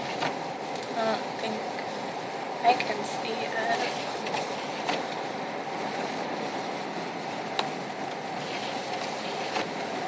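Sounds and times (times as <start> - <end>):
road and tyre noise inside car: 0.0 - 10.0.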